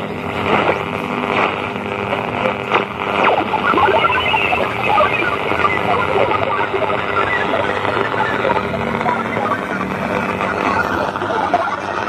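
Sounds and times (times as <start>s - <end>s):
radio static hiss: 0.0s - 12.0s
falling chirps: 3.1s - 11.9s
short warbling beeps: 3.1s - 11.9s.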